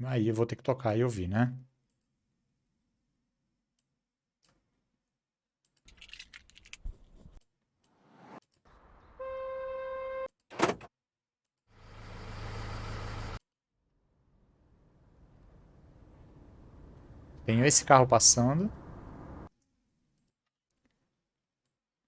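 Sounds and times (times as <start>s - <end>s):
steady car horn tone: 9.0s - 10.3s
rumbling vehicle noise: 11.8s - 13.4s, 14.3s - 19.5s
car rushing past: 18.7s - 19.5s.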